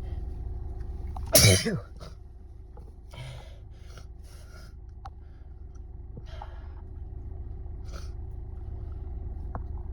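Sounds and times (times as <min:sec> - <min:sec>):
car engine idling: 0:00.0 - 0:09.9
person sneezing: 0:01.4 - 0:01.9.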